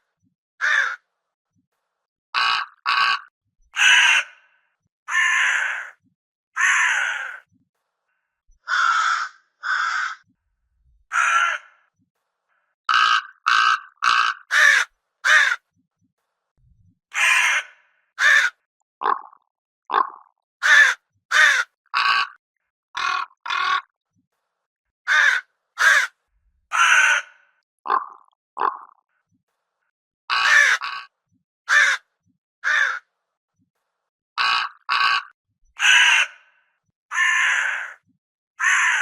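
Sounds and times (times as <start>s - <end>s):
crow cawing: 0.6s - 1.0s, 2.4s - 6.0s, 6.6s - 7.5s, 8.6s - 10.2s, 11.1s - 11.9s, 12.9s - 15.6s, 17.1s - 19.2s, 19.9s - 22.4s, 23.0s - 23.9s, 25.1s - 28.0s, 30.3s - 31.1s, 31.7s - 32.0s, 32.6s - 33.0s, 34.4s - 36.5s, 37.1s - 38.0s, 38.6s - 39.0s.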